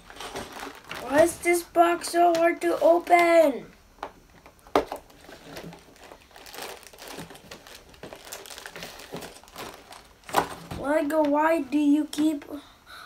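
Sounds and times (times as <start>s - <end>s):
cardboard box crinkling and scraping: 5.1s - 10.1s.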